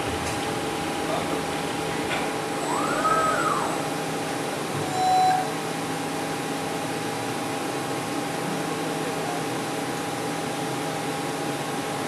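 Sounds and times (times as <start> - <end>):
machine hum: 0.0 - 5.4
short loud tone: 4.8 - 5.6.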